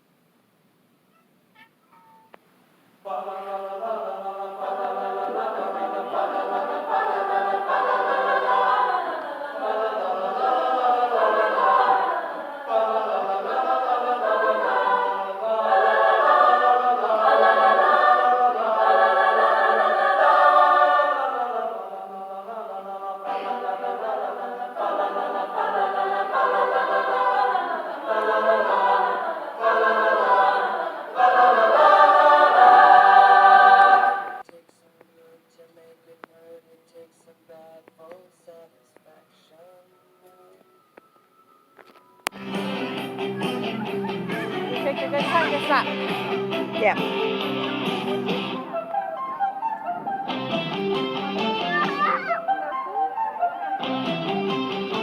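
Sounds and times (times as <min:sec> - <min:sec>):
choir singing: 0:03.0 - 0:34.4, 0:41.8 - 0:51.6.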